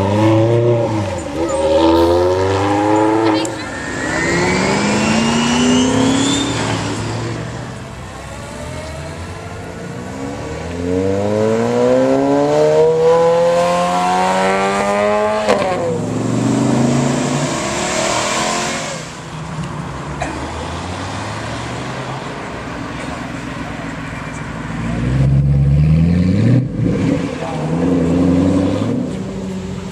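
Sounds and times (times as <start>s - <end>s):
sports car engine accelerating: 0.0s - 19.3s.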